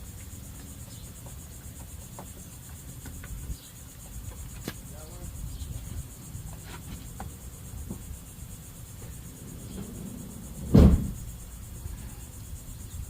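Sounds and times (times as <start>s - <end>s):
crickets chirping: 0.0s - 13.0s
low background rumble: 7.3s - 13.0s
loud thump: 9.0s - 11.3s.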